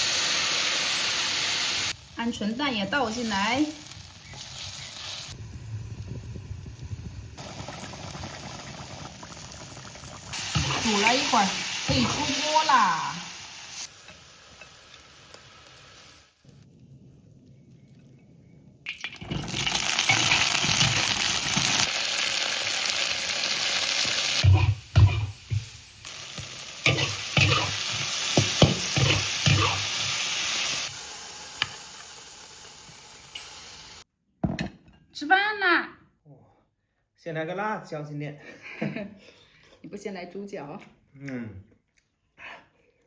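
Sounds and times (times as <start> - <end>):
food sizzling in a wok: 0.0 - 16.7, 19.0 - 34.1.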